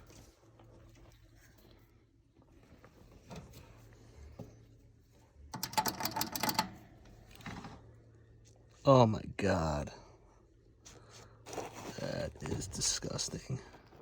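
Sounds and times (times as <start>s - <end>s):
low steady hum: 0.0s - 14.0s
rapid mechanical clicking and rattling: 5.5s - 7.7s.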